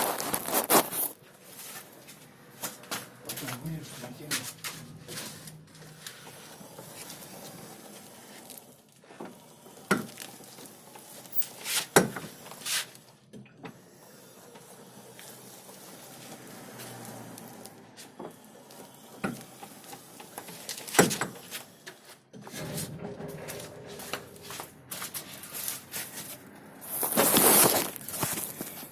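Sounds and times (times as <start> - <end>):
rustling and shuffling: 0.0 - 8.6, 20.4 - 28.9.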